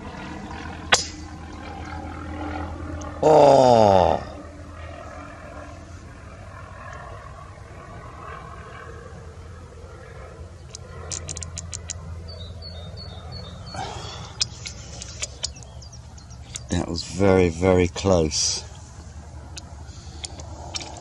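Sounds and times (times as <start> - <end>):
outdoor background hum: 0.0 - 21.0
sharp small clicks: 10.6 - 12.1, 14.3 - 16.7, 19.5 - 21.0.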